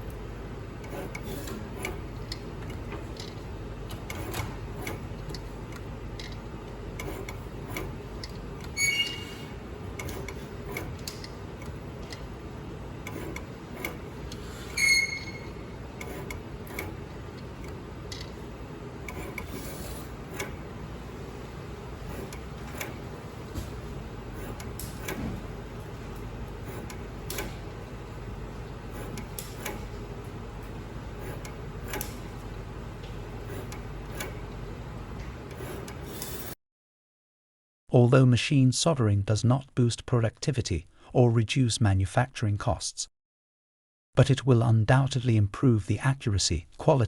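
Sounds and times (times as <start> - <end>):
machine humming: 0.0 - 36.6.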